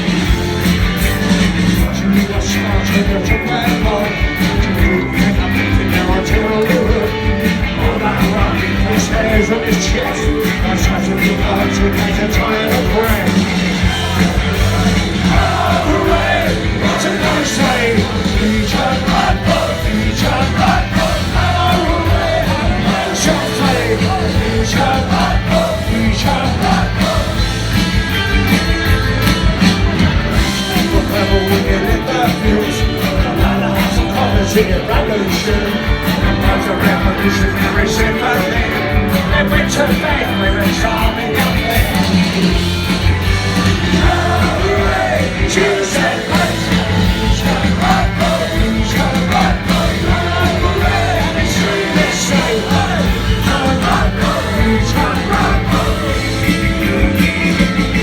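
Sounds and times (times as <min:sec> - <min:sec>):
rock band music: 0:00.0 - 0:58.0.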